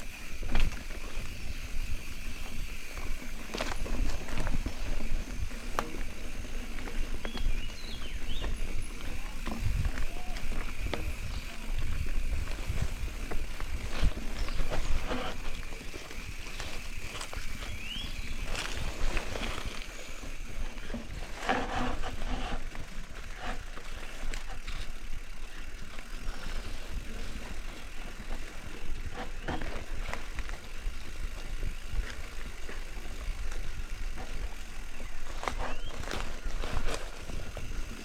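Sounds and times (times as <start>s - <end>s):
bike clicks and rattles: 0.0s - 38.0s
bike rolling rumble on dirt: 0.0s - 38.0s
wind buffeting microphone: 7.2s - 15.5s.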